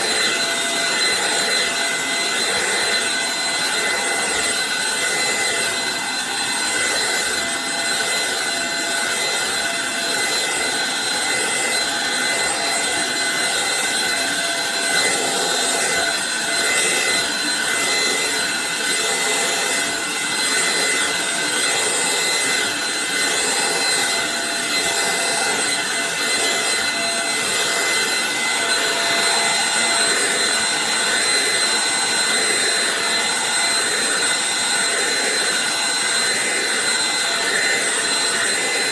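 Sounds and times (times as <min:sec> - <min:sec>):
stick vacuum running: 0:00.0 - 0:38.9.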